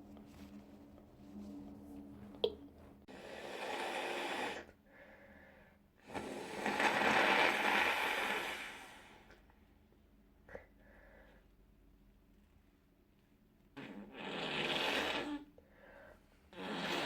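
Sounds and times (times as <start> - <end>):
person blowing nose: 3.1 - 4.7, 6.1 - 9.2, 13.8 - 15.5, 16.5 - 17.0.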